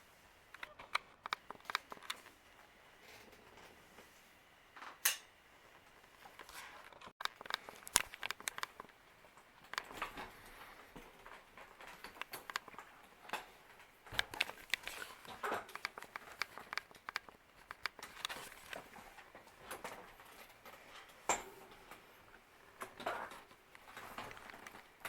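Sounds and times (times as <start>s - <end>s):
brief rustling: 14.1s - 20.4s.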